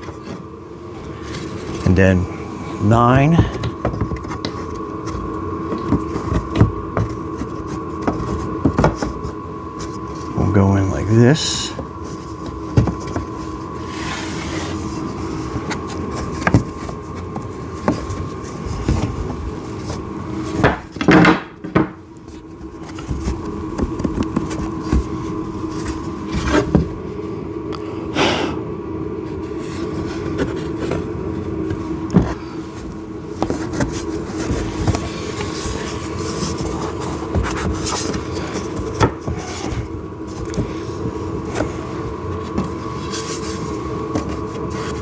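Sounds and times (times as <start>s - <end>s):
steady background hum: 0.0s - 45.0s
wood sliding and scraping: 11.2s - 21.1s.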